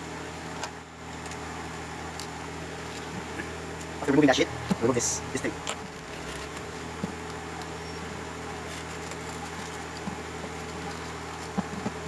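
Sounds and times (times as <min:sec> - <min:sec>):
steady low hum and hiss: 0:00.0 - 0:12.0
faint clicks of small parts: 0:00.4 - 0:01.5, 0:08.6 - 0:12.0.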